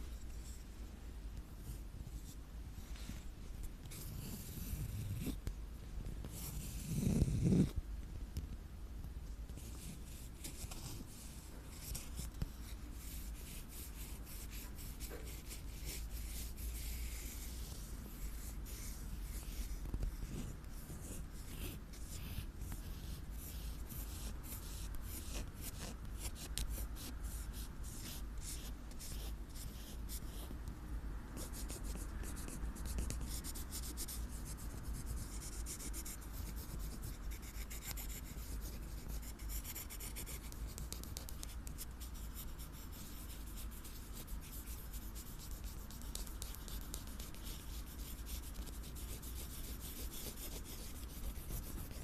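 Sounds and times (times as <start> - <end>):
scratching on surface: 9.5 - 30.6, 31.4 - 52.0.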